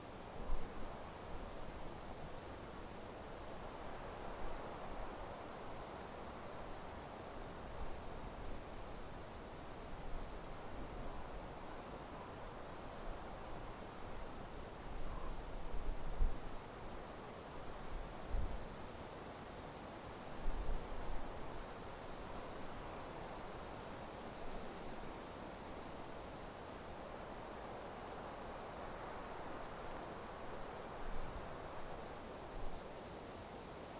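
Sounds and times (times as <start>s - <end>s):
insects chirring: 13.8s - 33.9s.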